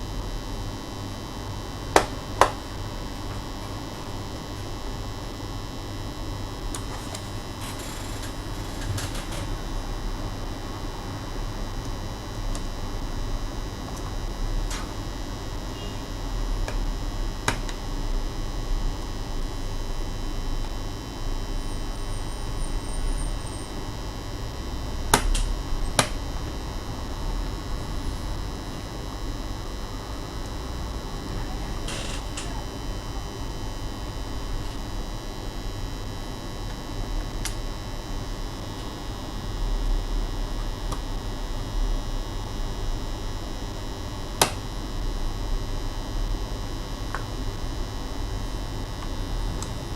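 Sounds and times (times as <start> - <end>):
steady low hum: 0.0 - 49.9
laptop parts clicking: 6.7 - 9.5.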